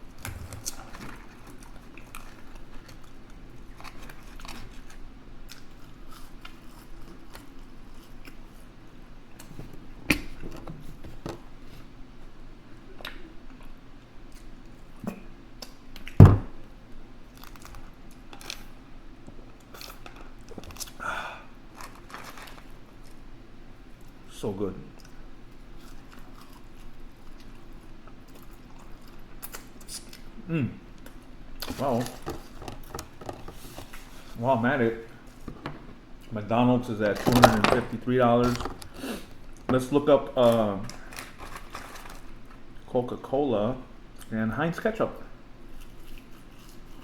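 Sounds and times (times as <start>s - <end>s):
faint steady hum: 0.0s - 47.0s
person chewing food: 0.1s - 8.8s, 25.0s - 30.3s.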